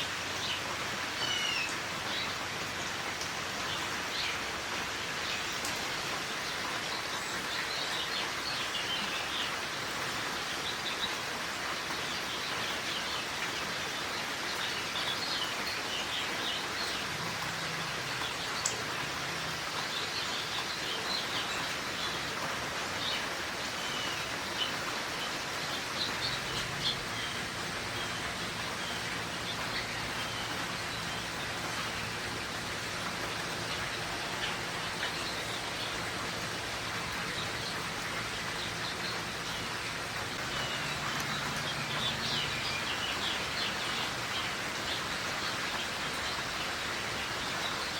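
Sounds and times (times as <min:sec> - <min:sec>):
steady rain falling: 0:00.0 - 0:47.9.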